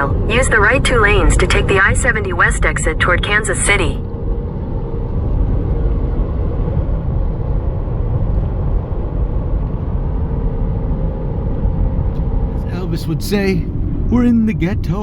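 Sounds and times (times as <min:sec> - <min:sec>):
car cabin road noise: 0:11.4 - 0:15.0.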